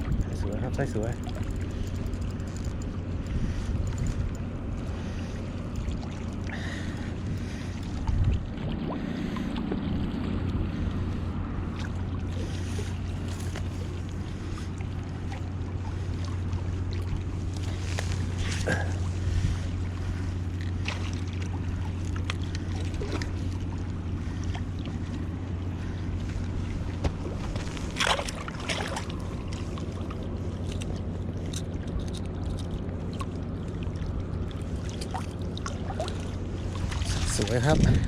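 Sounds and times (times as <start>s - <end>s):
low motor hum: 0.0s - 38.0s
rustle: 17.5s - 19.2s.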